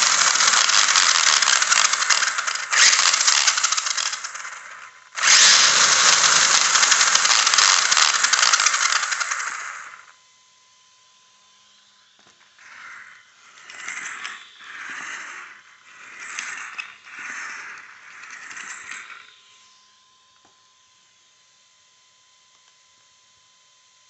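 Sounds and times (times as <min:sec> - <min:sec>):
toy truck drivetrain grinding: 0:00.0 - 0:10.1, 0:12.6 - 0:19.4.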